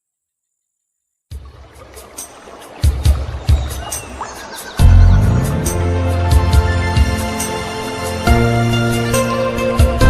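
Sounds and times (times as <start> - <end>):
light percussion beat: 1.3 - 8.6
deep bass notes and chords: 4.8 - 7.4.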